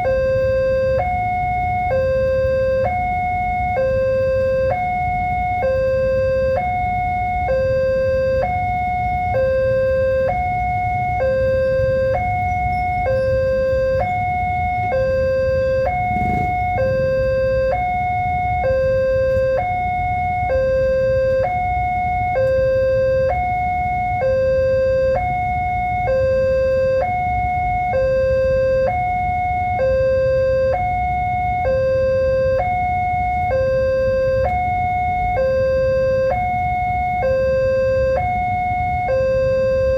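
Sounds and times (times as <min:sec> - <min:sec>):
two-tone level crossing alarm: 0:00.0 - 0:39.9
steady low rumble: 0:14.8 - 0:18.6.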